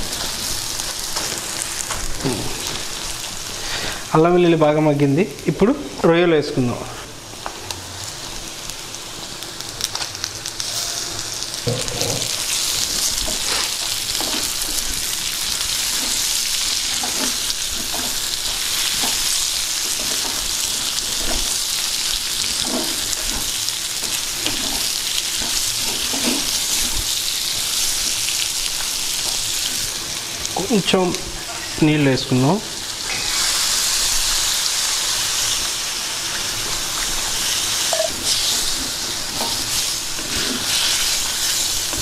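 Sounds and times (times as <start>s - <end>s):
prawns sizzling in hot oil: 0.0s - 6.1s, 6.8s - 42.0s
pan stirring scrapes: 38.0s - 41.7s.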